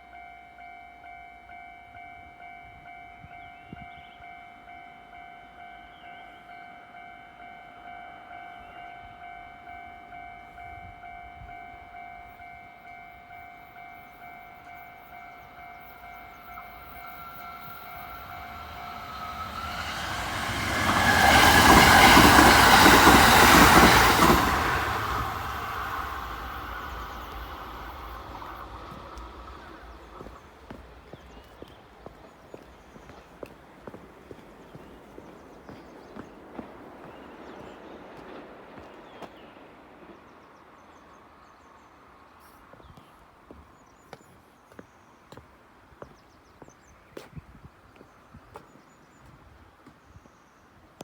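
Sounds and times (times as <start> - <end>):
level crossing warning bell: 0.0 - 36.7
train passing: 2.0 - 44.0.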